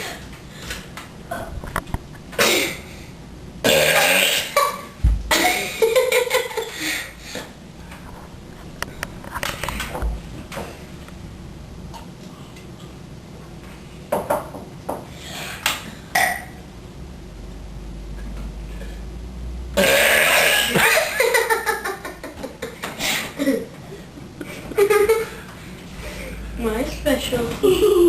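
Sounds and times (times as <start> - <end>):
children burping: 3.6 - 5.6, 19.8 - 21.0
children giggling: 4.6 - 7.1, 20.7 - 25.5, 27.6 - 28.0.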